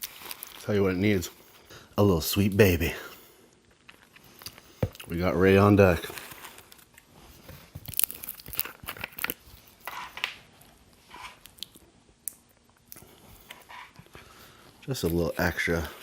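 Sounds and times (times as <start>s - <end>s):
paper wrapper crinkling: 0.0s - 1.4s, 3.6s - 10.4s.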